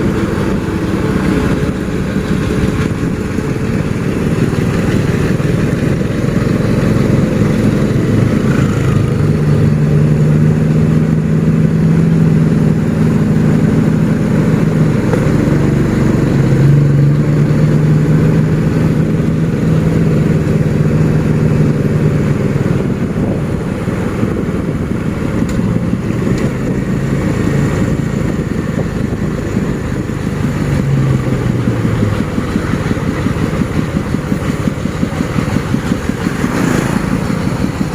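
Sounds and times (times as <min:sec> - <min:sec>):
vehicle engines running uphill: 0:00.0 - 0:37.9.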